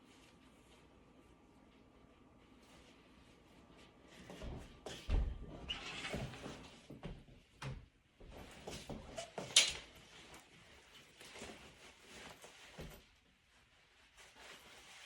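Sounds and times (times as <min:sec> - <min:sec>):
fabric rustling: 0:08.4 - 0:15.0.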